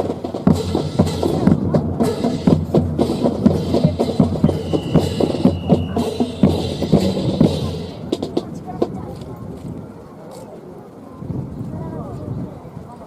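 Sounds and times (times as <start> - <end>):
drum-driven music: 0.0 - 9.2.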